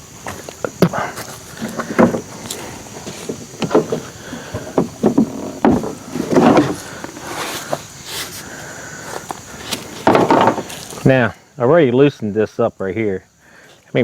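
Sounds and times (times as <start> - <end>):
tools knocking and clunking: 1.6 - 7.2, 10.0 - 10.8.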